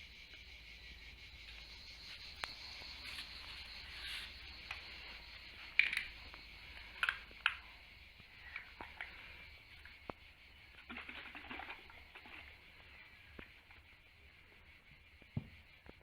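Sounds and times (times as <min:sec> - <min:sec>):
steady hiss: 0:00.0 - 0:16.0
small sharp clicks and crinkles: 0:05.6 - 0:07.6.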